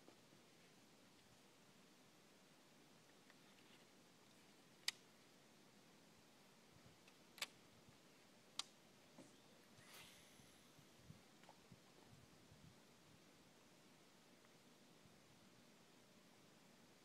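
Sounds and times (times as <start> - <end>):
soft rustle: 3.0 - 5.3, 9.0 - 13.0.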